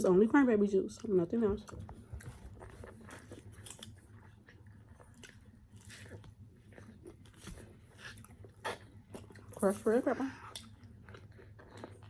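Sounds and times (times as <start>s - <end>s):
low steady room hum: 0.0s - 12.0s
chewing and biting food: 1.0s - 12.0s.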